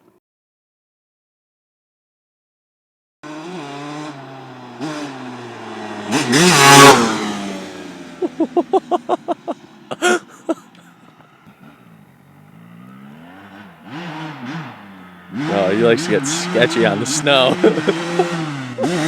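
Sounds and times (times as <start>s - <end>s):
dirt bike engine revving: 3.2s - 19.0s.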